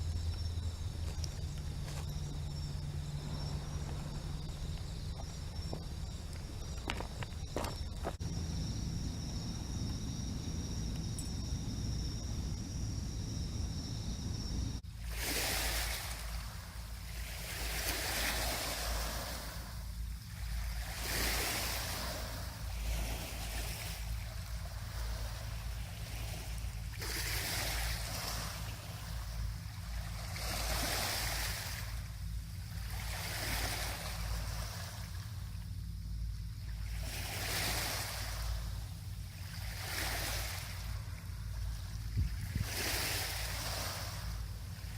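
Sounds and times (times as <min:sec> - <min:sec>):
low rumble: 0:00.0 - 0:14.9
insects trilling: 0:00.0 - 0:44.9.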